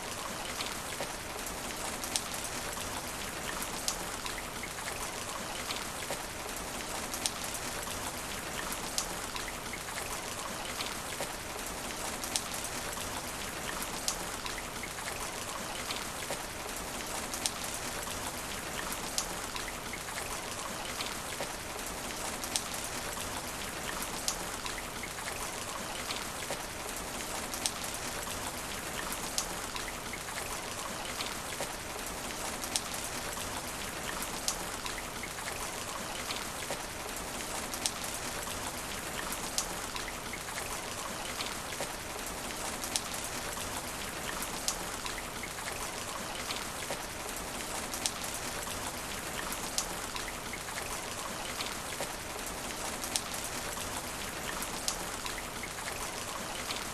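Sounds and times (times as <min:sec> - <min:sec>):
rain hitting asphalt: 0:00.0 - 0:56.9.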